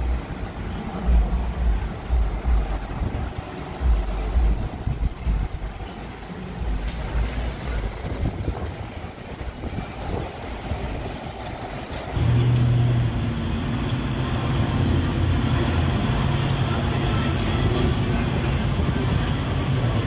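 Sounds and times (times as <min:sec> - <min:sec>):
uneven outdoor rumble: 0:00.0 - 0:20.0
low machine hum: 0:12.2 - 0:20.0.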